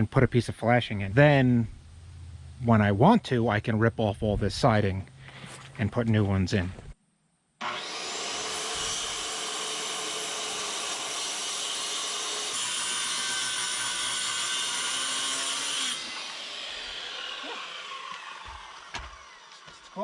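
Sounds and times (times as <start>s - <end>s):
power saw cutting siding: 7.6s - 20.0s
saw blade winding down: 7.6s - 20.0s.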